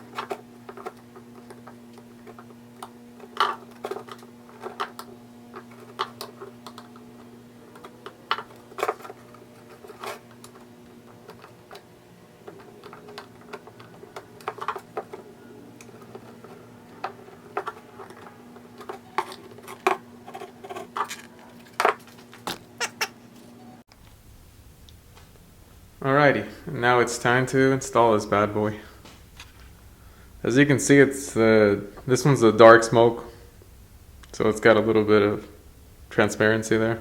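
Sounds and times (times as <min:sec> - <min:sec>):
clicks and scrapes on plastic: 0:00.0 - 0:23.1
steady low hum: 0:00.0 - 0:37.0.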